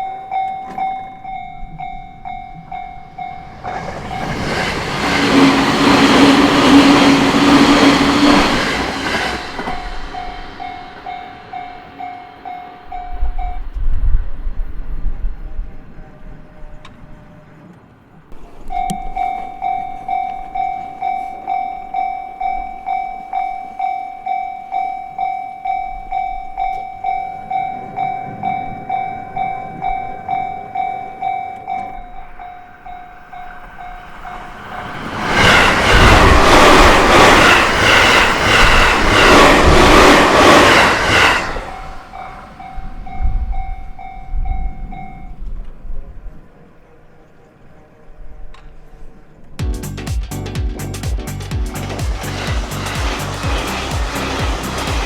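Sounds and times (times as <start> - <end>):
level crossing warning bell: 0.0 - 13.8, 18.4 - 45.5
train passing: 0.0 - 55.0
train wheels clacking over rail joints: 2.6 - 12.5, 33.5 - 43.6, 51.6 - 55.0.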